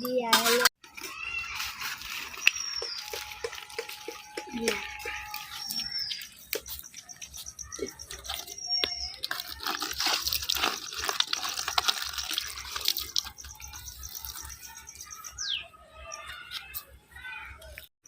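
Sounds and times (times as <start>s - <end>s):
bird trilling: 2.2s - 9.4s
water splashing and dripping: 8.1s - 15.1s.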